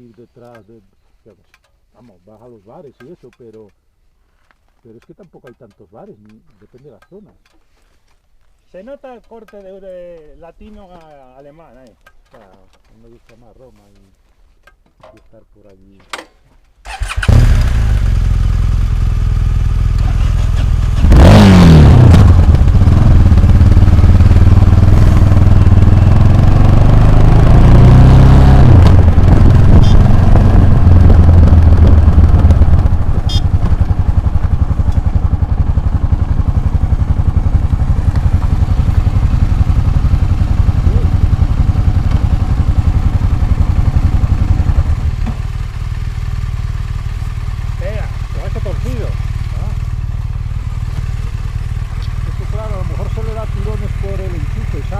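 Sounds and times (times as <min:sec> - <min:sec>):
motorcycle engine revving: 0:16.8 - 0:54.9.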